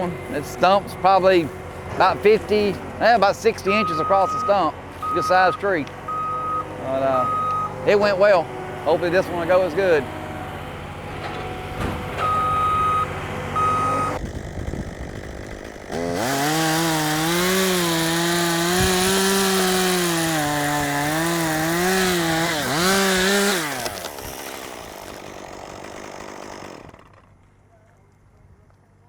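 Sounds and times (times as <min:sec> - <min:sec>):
short beeps: 0:03.8 - 0:07.8, 0:12.2 - 0:14.2
chainsaw cutting wood: 0:12.2 - 0:27.5.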